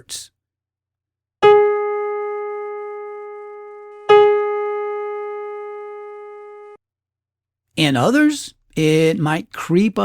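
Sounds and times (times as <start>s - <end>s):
keyboard note ringing: 1.4s - 6.8s.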